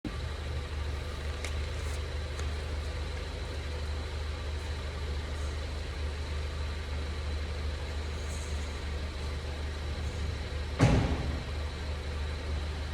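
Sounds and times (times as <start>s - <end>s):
road rumble inside car: 0.1s - 12.9s.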